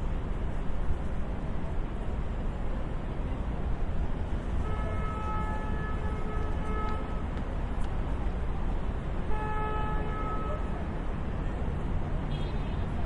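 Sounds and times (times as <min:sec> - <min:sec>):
street traffic rumble: 0:00.0 - 0:13.0
car horn: 0:04.6 - 0:07.2, 0:09.3 - 0:10.7, 0:12.3 - 0:13.0.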